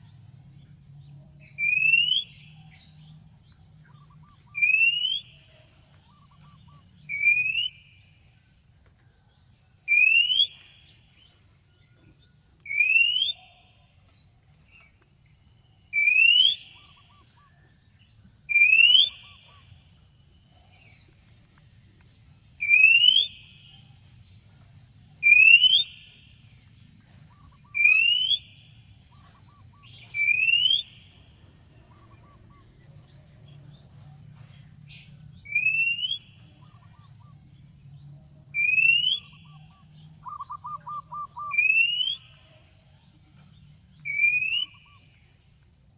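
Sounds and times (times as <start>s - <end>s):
bird rising whistle: 18.5s - 19.4s, 35.5s - 36.3s.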